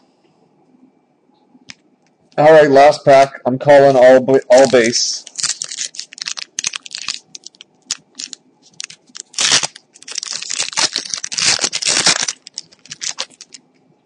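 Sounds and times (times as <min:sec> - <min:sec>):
foil wrapper crinkling: 0:04.5 - 0:13.6
foil wrapper ripping: 0:04.5 - 0:13.6.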